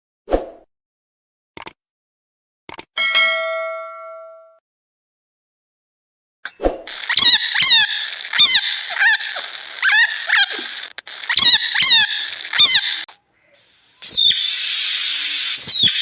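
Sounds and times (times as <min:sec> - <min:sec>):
animal squeaky calls: 0:06.9 - 0:13.1, 0:14.0 - 0:16.0
steady hiss: 0:06.9 - 0:16.0.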